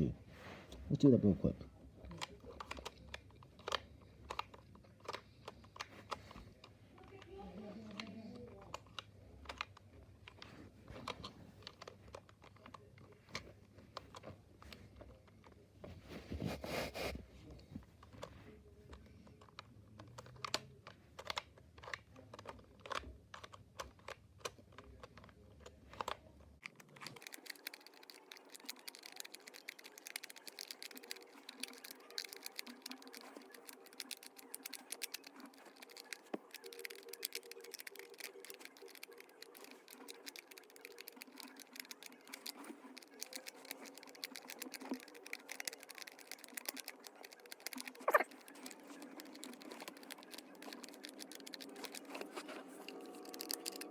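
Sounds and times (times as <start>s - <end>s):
plastic toy pieces clicking: 20.0s - 53.9s.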